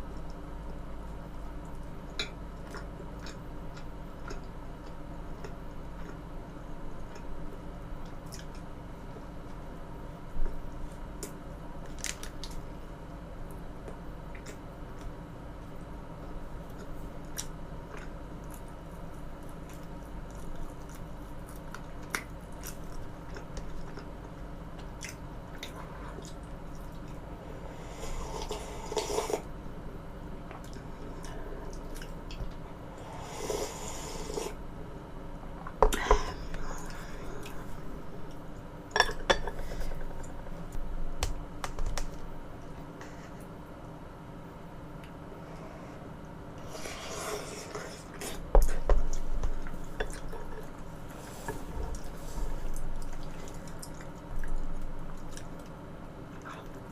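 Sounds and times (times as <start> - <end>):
chewing and mouth sounds: 1.6 - 6.3, 16.7 - 27.2, 30.5 - 32.6, 47.6 - 56.9.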